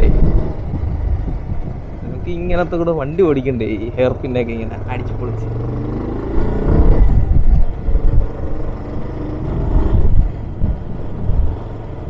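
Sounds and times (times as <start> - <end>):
motorcycle engine accelerating: 0.0 - 12.0
wind buffeting microphone: 0.0 - 12.0.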